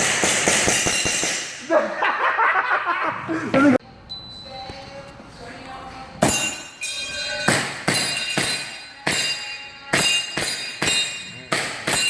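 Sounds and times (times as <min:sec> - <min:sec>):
pellets striking steel targets: 0:00.0 - 0:01.7, 0:06.2 - 0:12.0.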